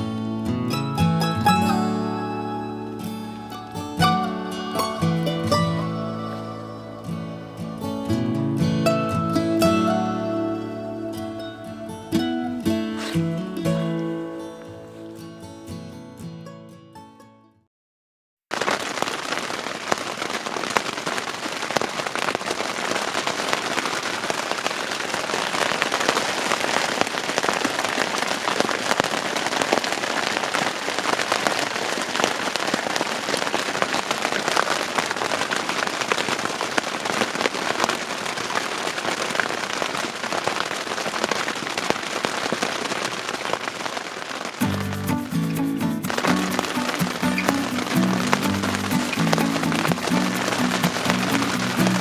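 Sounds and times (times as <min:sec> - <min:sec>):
campfire crackling: 0:18.5 - 0:52.0.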